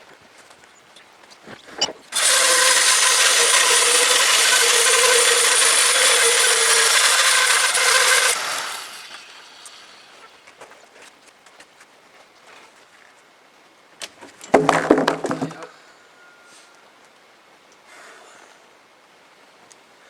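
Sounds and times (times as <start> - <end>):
bandsaw mill running: 2.1 - 10.4.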